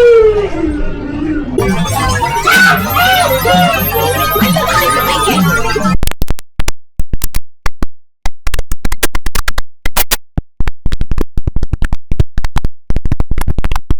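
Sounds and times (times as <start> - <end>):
stuttering electronic blips: 1.6 - 6.0.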